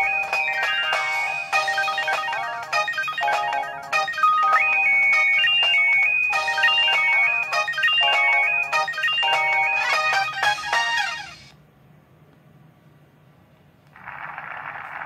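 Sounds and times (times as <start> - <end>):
polyphonic phone ringtone: 0.0 - 11.5.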